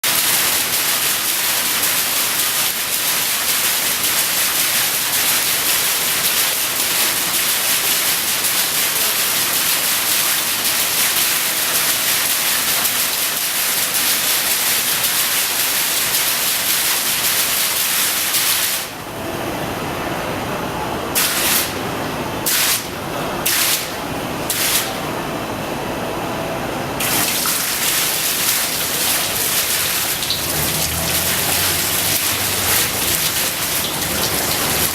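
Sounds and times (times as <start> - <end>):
water gushes: 0.0 - 19.0, 27.0 - 34.9
low background murmur: 18.9 - 34.9
waterfall splashing: 27.0 - 34.9.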